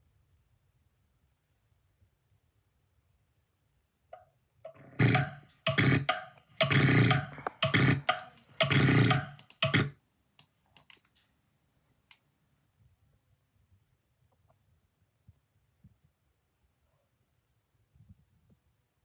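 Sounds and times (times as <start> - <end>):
loud rough snoring: 4.8 - 9.9.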